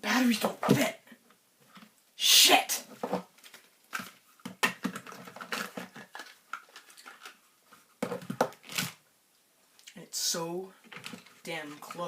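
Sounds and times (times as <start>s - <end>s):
plastic clicks and rattles: 3.4s - 7.4s, 10.8s - 11.4s.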